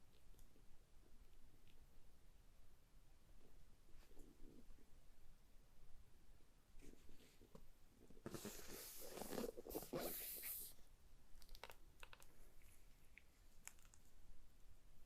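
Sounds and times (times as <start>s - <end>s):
packaging rustling and scraping: 8.3s - 10.7s.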